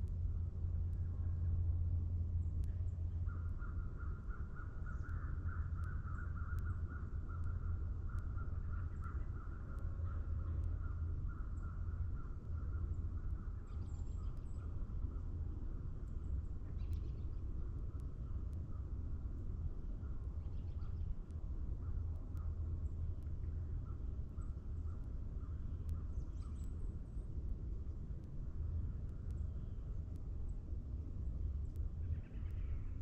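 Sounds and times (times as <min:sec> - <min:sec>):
steady low rumble: 0:00.0 - 0:33.0
faint high bird calls: 0:02.8 - 0:14.7, 0:32.0 - 0:33.0.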